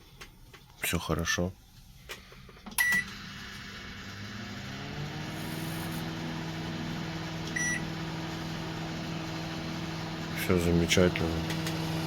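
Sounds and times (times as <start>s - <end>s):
microwave oven humming: 2.8s - 12.0s.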